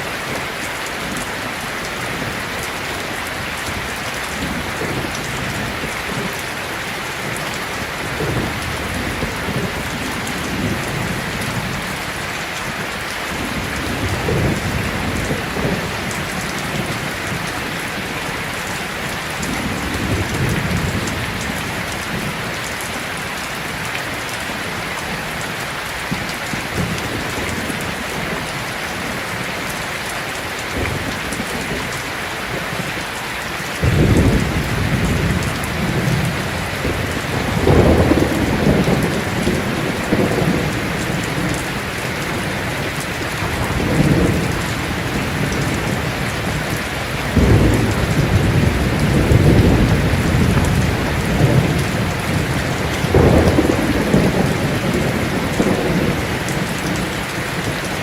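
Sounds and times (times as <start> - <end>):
heavy rain falling: 0.0 - 58.0
thunder rumbling: 13.3 - 23.8, 33.8 - 57.8.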